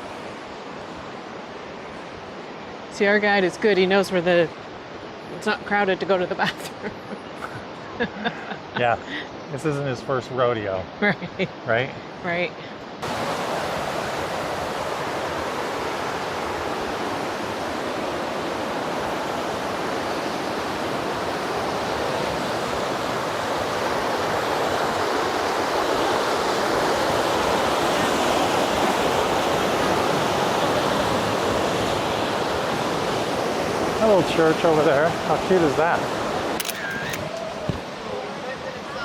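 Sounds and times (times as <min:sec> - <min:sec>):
waterfall rushing: 0:13.0 - 0:39.0.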